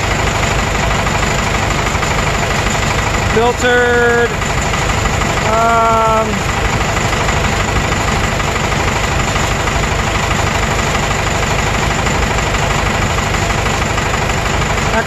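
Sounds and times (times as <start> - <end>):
diesel engine chugging: 0.0 - 15.0.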